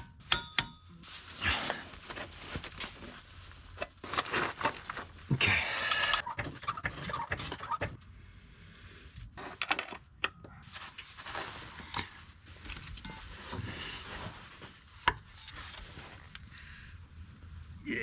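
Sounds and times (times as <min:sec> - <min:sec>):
hand tools clicking on metal: 0:00.0 - 0:01.0
scraping and rubbing: 0:01.0 - 0:05.4, 0:09.3 - 0:16.6.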